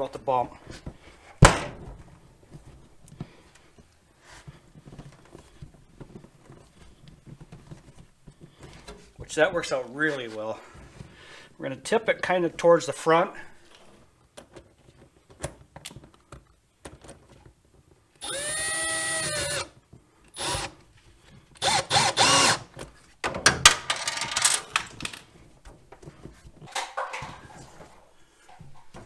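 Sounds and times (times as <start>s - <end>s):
power drill motor whine: 18.2s - 19.7s, 20.4s - 20.7s, 21.6s - 22.6s
clattering handling noise: 22.8s - 29.0s.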